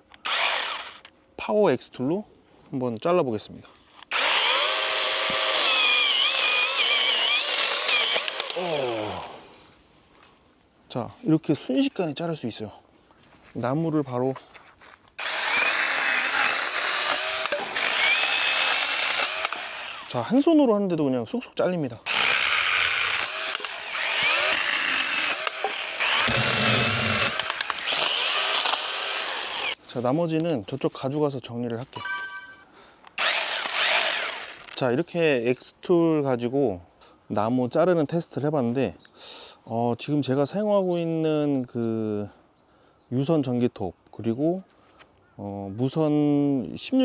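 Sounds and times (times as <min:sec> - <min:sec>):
battery chainsaw cutting branch: 0:00.0 - 0:01.1, 0:04.1 - 0:09.4, 0:15.2 - 0:20.2, 0:22.1 - 0:29.8, 0:33.2 - 0:34.8.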